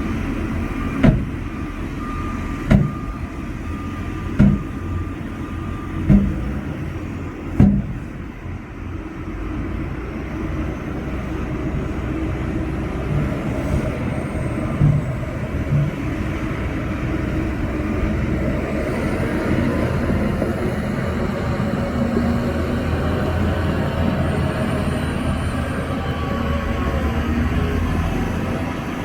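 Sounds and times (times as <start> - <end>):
diesel machinery rumbling: 0.0 - 29.0
sharp knock: 4.4 - 4.7, 6.1 - 6.4.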